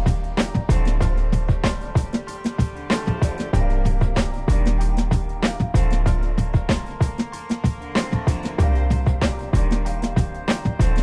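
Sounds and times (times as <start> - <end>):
deep bass: 0.0 - 1.8, 3.6 - 6.8, 8.6 - 10.2
background music: 0.0 - 11.0
steady drum beat: 0.0 - 11.0.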